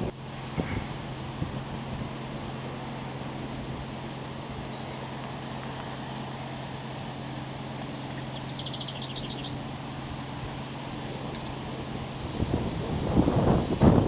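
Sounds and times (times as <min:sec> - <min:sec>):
low mechanical hum: 0:00.0 - 0:14.0
bird trilling: 0:08.0 - 0:09.6.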